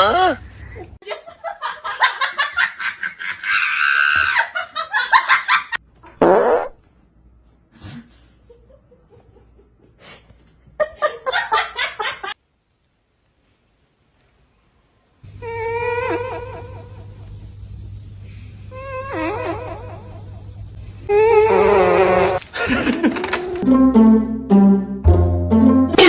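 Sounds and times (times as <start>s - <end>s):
people laughing: 0.8s - 5.8s, 8.1s - 12.4s, 22.5s - 23.6s.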